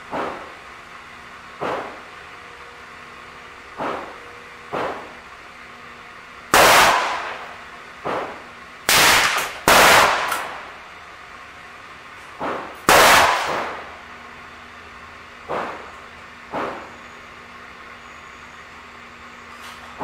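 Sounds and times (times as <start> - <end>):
loud revolver shots: 6.5 - 7.5, 8.1 - 10.6, 12.9 - 13.8
fainter gunshots: 6.5 - 10.7, 12.4 - 13.9.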